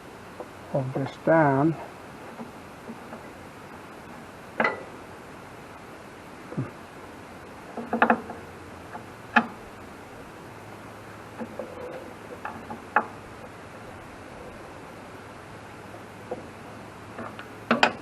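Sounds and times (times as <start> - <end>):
clinks and knocks on metal: 4.6 - 4.9, 17.2 - 18.0.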